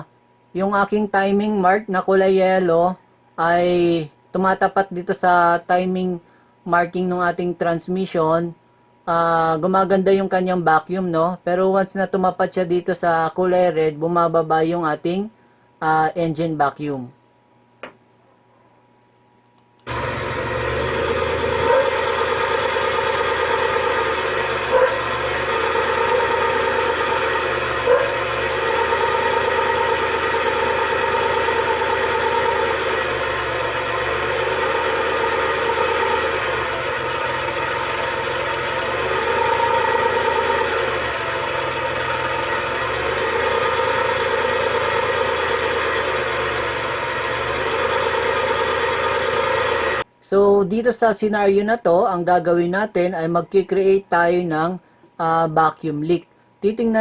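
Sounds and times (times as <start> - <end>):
car engine idling: 19.9 - 50.0.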